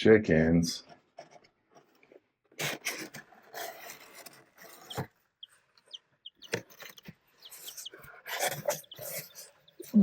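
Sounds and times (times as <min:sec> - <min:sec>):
rustling and scraping: 0:00.8 - 0:10.0
chicks peeping: 0:02.6 - 0:10.0.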